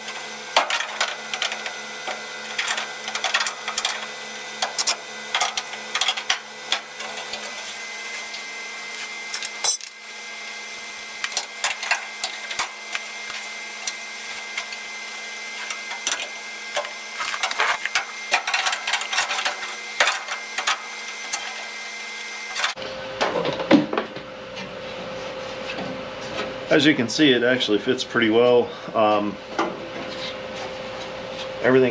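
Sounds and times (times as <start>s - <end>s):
machine hum: 0.0s - 23.1s.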